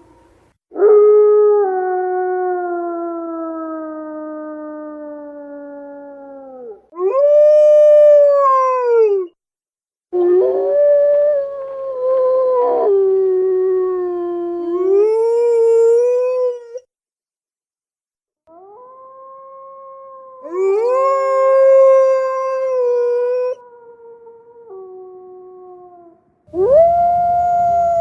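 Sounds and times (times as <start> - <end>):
wolves howling: 20.1 - 28.0.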